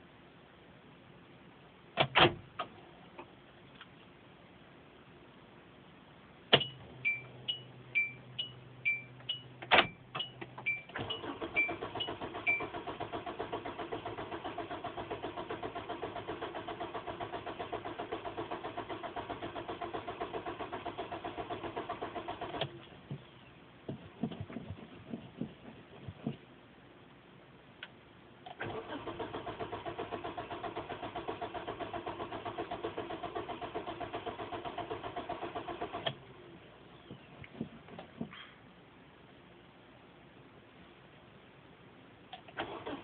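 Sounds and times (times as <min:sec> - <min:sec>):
starter cranking engine: 0:11.0 - 0:22.8, 0:28.6 - 0:36.2, 0:42.6 - 0:43.0.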